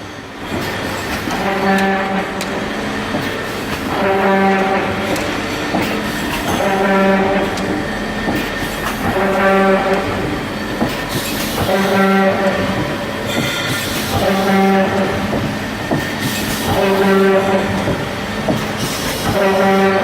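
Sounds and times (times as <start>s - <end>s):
machine clattering and knocking: 0.4s - 20.0s.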